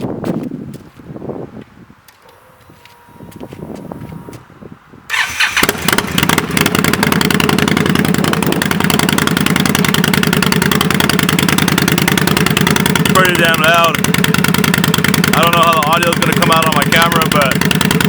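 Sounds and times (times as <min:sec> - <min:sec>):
motorcycle engine starting and idling: 0:05.1 - 0:18.0.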